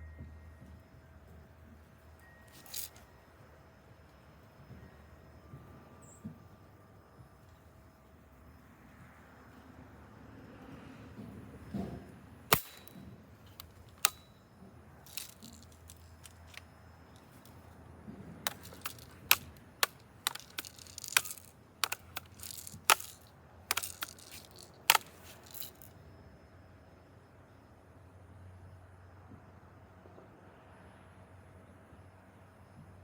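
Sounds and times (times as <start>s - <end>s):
bb gun cracks: 2.6s - 3.0s, 12.5s - 14.3s, 15.1s - 16.6s, 18.5s - 25.9s.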